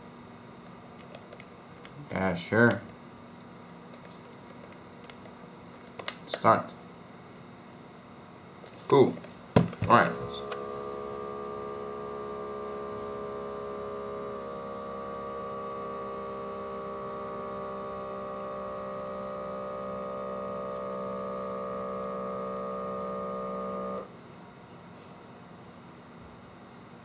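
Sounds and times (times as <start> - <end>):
small electric air pump humming: 9.5 - 24.1.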